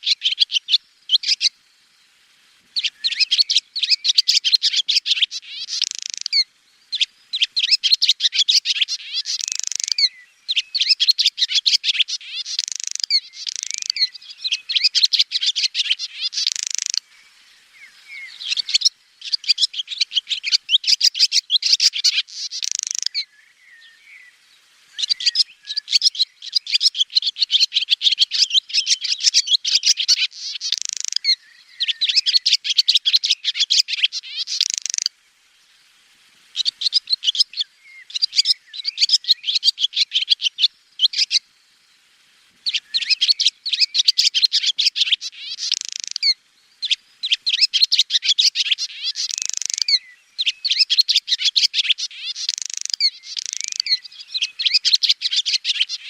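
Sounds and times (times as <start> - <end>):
swallow twittering: 0.0 - 1.6, 2.8 - 35.1, 36.5 - 41.4, 42.6 - 56.0.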